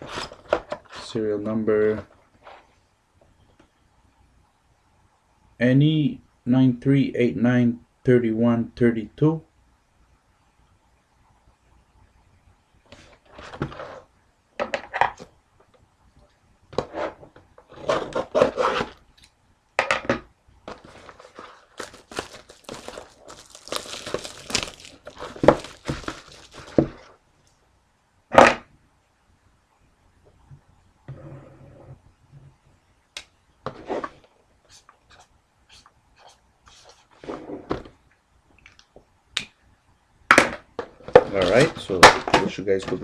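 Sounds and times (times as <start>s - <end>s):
plastic wrap crinkling and tearing: 20.7s - 27.1s.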